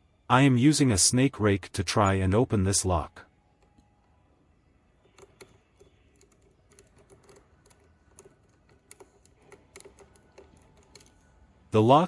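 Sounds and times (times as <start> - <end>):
metallic clicking of lock pick: 5.0 - 11.3.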